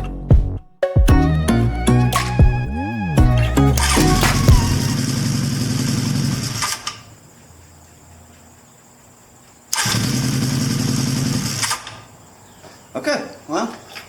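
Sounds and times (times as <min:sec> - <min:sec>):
motorcycle electric starter cranking: 0:03.3 - 0:07.2, 0:09.7 - 0:12.1.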